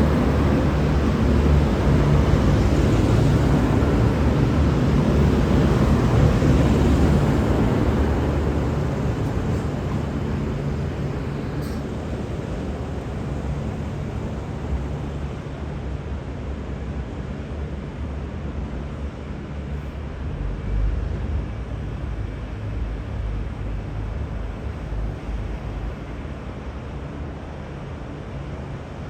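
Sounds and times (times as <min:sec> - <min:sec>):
train wheels rumbling: 0:00.0 - 0:15.8
diesel train engine: 0:00.0 - 0:29.0.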